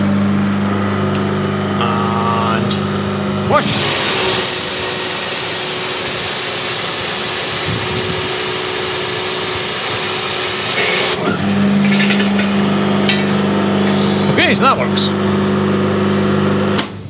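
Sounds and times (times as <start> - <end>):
motor and pump humming: 0.0 - 17.0
high-pressure water jet hissing: 3.5 - 11.7.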